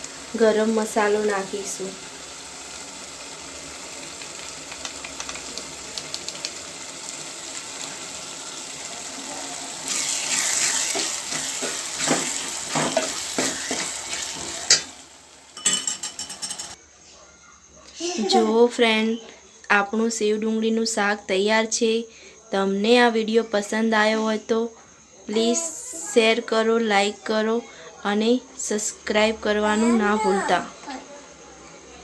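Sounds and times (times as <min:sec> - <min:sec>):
curry sizzling in a pan: 0:00.0 - 0:16.8.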